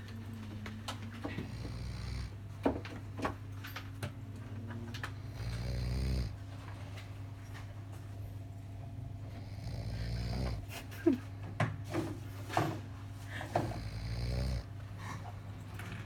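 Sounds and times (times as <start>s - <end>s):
long low snores: 1.3s - 2.4s, 5.1s - 6.4s, 9.2s - 10.7s, 13.5s - 14.7s.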